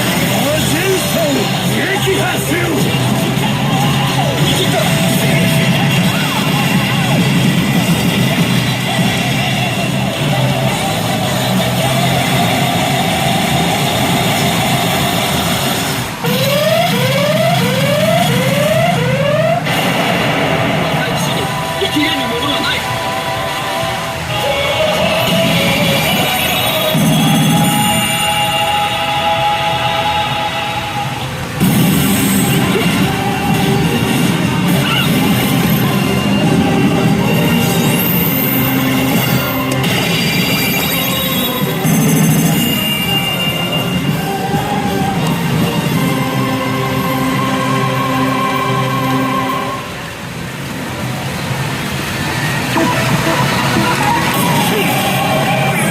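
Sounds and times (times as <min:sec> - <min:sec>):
loud steady noise: 0:00.0 - 0:55.9
rising siren-like tone: 0:16.2 - 0:22.2, 0:52.2 - 0:55.9
slot machine sound effects: 0:25.2 - 0:28.7, 0:33.8 - 0:44.2, 0:52.4 - 0:55.9.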